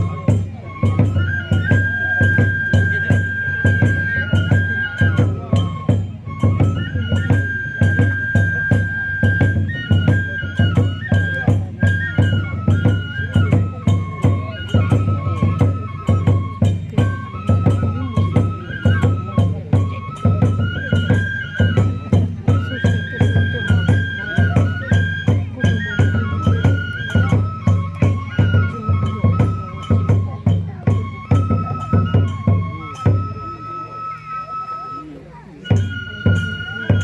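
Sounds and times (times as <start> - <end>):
taiko drum beat: 0.0 - 33.8, 35.6 - 37.0
bamboo flute melody: 0.0 - 37.0.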